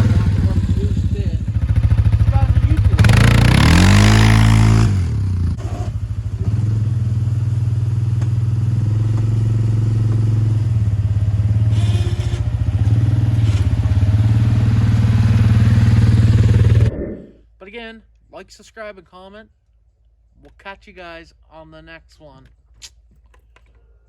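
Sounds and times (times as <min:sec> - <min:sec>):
small engine running: 0:11.7 - 0:12.5.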